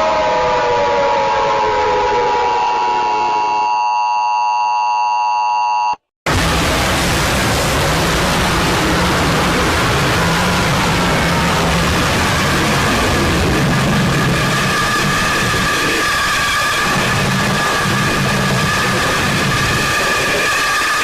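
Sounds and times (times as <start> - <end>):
falling tone over noise: 0.0 - 21.0.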